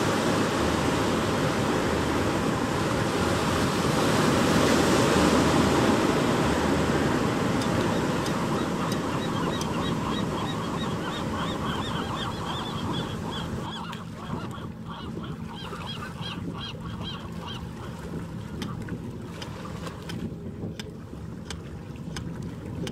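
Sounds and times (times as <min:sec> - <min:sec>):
ocean surf washing ashore: 0:00.0 - 0:22.9
birds honking: 0:07.6 - 0:17.9.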